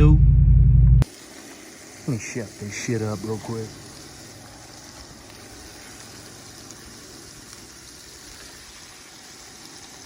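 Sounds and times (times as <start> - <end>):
food sizzling and bubbling in pan: 1.0 - 10.0.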